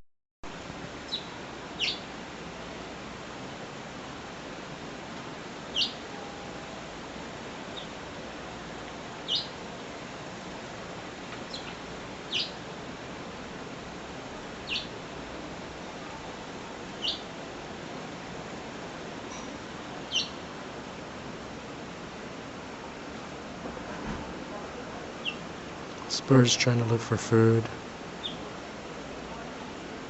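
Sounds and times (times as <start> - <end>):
steady background hiss: 0.5 - 30.0
small bird chirping: 1.1 - 2.0, 5.7 - 6.0, 9.2 - 9.5, 11.5 - 12.6, 14.6 - 14.9, 17.0 - 17.3, 20.1 - 20.4, 25.2 - 25.4, 28.2 - 28.4.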